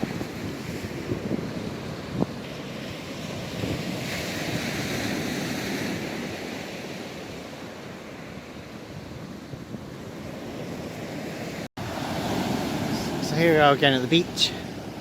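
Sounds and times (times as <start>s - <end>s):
wind buffeting microphone: 0.0s - 6.7s
sea waves washing onto beach: 0.0s - 15.0s.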